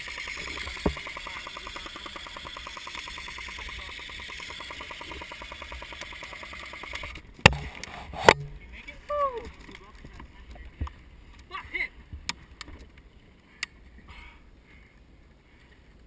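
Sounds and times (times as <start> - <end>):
airsoft guns rapid firing: 0.0 - 7.1.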